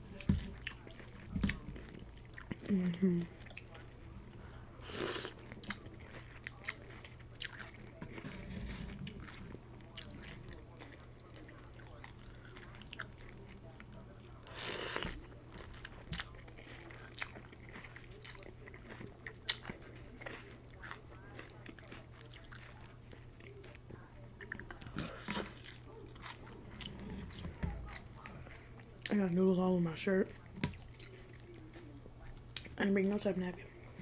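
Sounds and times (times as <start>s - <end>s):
chewing and crunching noodles: 0.0s - 34.0s.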